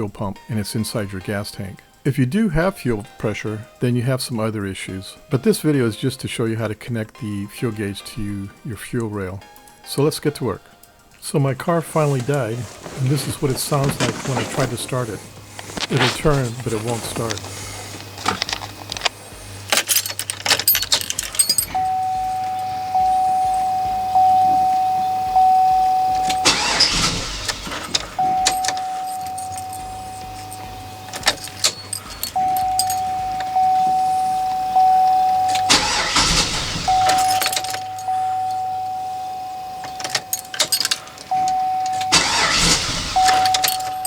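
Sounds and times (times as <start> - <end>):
engine cranking without starting: 11.7 - 44.0
high warning tone: 11.9 - 44.0.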